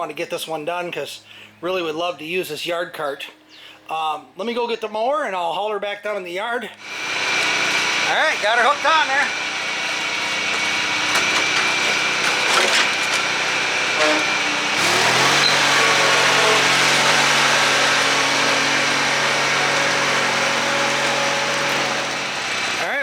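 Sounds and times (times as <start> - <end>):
riding mower engine revving: 6.8 - 23.0.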